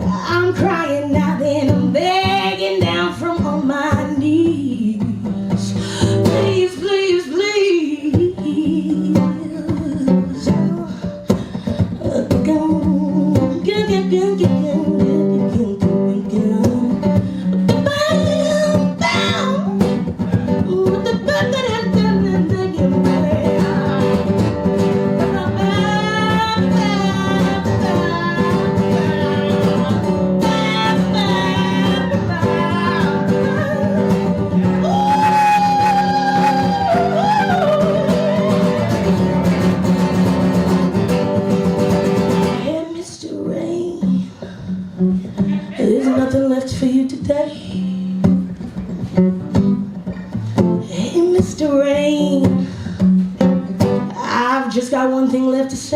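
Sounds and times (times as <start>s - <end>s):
live blues band playing: 0.0s - 55.9s
lead guitar with bent notes: 18.8s - 42.8s.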